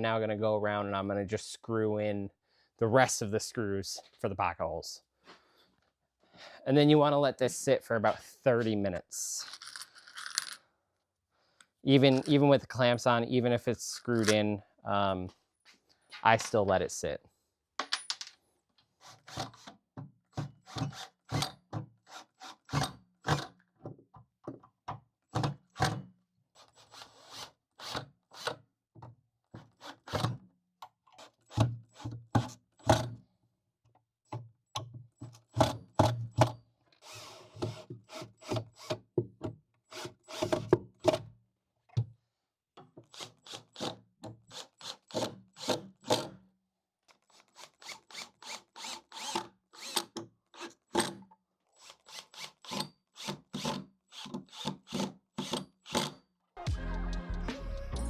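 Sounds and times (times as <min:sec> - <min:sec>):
cordless drill driving screws: 0:37.0 - 0:39.0, 0:43.1 - 0:46.3, 0:47.2 - 0:51.2, 0:51.8 - 0:56.2.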